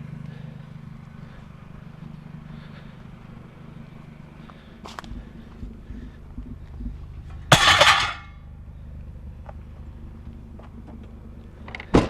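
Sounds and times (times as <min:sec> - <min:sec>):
steady low hum: 0:00.0 - 0:11.9
loud clatter: 0:07.4 - 0:08.4.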